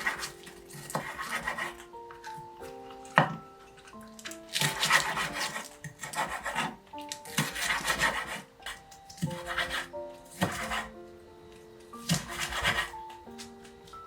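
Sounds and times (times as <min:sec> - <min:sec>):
rasping rubbing strokes: 0:00.0 - 0:01.8, 0:04.6 - 0:06.8, 0:07.4 - 0:08.5, 0:09.2 - 0:10.9, 0:12.1 - 0:13.0
soft background music: 0:00.0 - 0:14.0.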